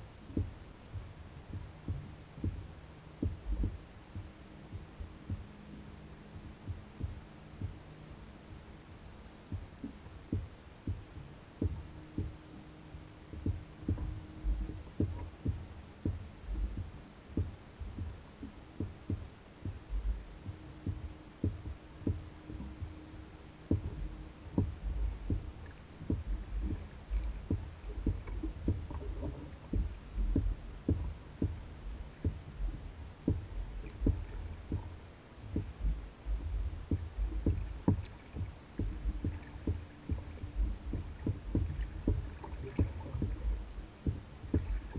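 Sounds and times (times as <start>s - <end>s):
faint steady hum: 0.0s - 44.9s
waves knocking against canoe hull: 9.6s - 44.9s.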